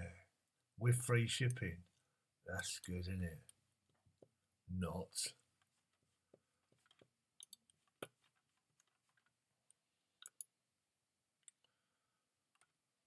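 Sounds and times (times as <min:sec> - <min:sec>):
computer mouse clicks: 0:06.8 - 0:08.9, 0:10.2 - 0:10.5.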